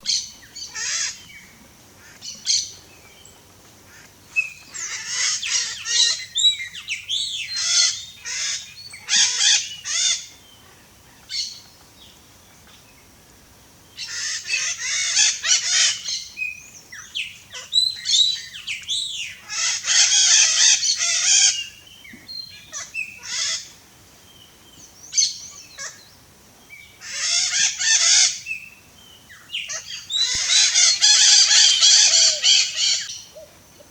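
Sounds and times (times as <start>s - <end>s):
macaw squawking: 0.0s - 1.4s, 3.9s - 10.4s, 14.0s - 16.5s, 17.1s - 23.8s, 25.2s - 26.1s, 27.0s - 28.7s, 29.3s - 33.9s.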